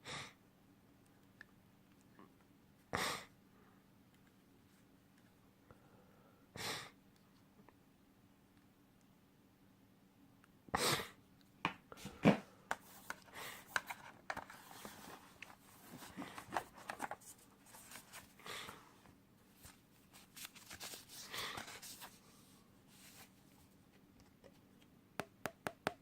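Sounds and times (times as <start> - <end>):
rustling of packaging: 12.7 - 18.8, 19.4 - 23.8.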